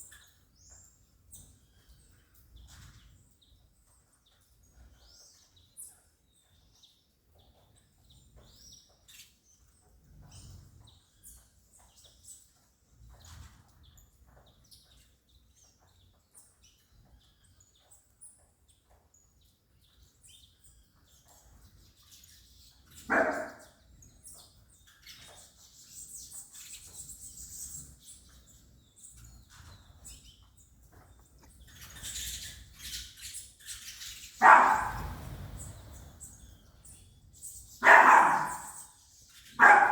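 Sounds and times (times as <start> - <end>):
finches chirping: 0.0 - 39.9
dog barking: 23.0 - 23.8, 34.4 - 35.4, 37.8 - 38.9, 39.6 - 39.9.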